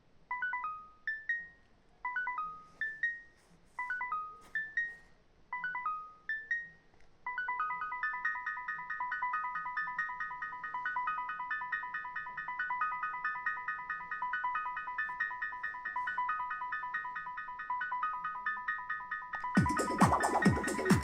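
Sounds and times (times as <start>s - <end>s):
beepy synth notes: 19.6s - 21.0s.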